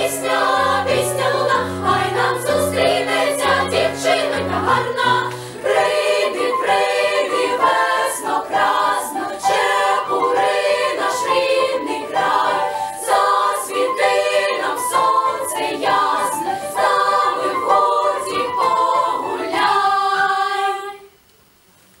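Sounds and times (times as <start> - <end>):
children's choir singing: 0.0 - 21.1.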